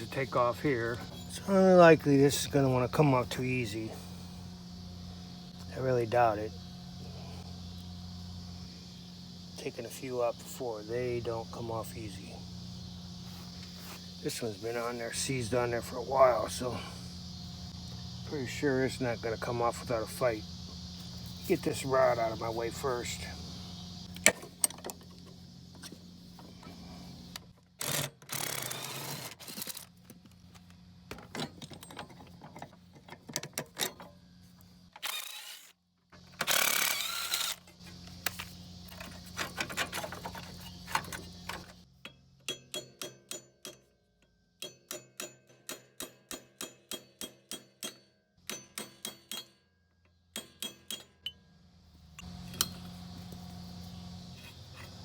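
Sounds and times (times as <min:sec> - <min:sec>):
tools clanking and scraping metal: 0:00.5 - 0:01.6, 0:31.1 - 0:34.2, 0:37.6 - 0:43.9, 0:52.2 - 0:53.0, 0:54.3 - 0:55.0.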